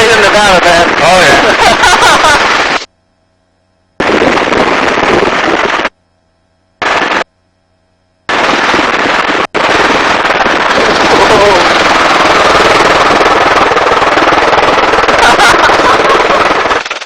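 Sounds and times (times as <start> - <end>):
helicopter cabin noise: 0.0 - 2.9, 4.0 - 6.0, 8.3 - 17.0.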